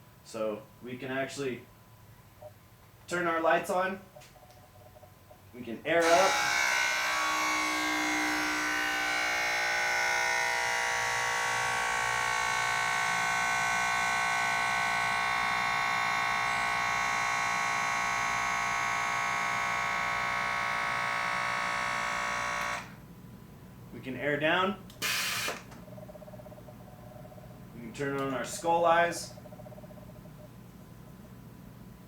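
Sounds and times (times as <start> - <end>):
air compressor running: 6.0 - 23.0, 25.0 - 25.8.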